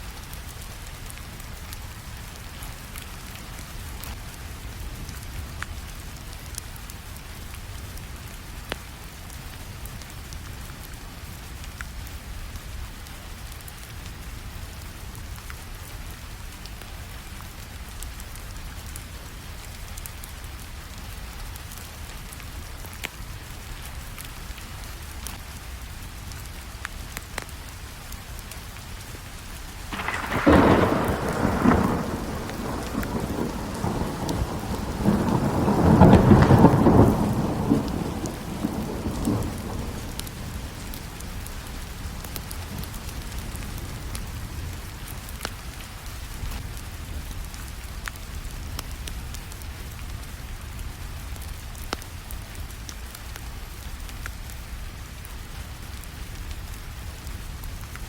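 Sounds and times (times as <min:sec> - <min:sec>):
steady rainfall: 0:00.0 - 0:58.0
thunder rolling: 0:29.9 - 0:44.6.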